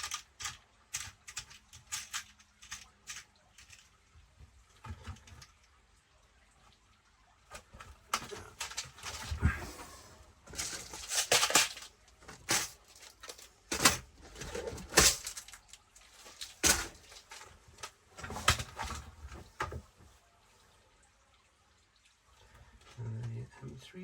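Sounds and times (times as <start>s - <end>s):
small screws and parts rattling: 0.0s - 4.0s, 7.5s - 9.5s, 10.5s - 19.0s.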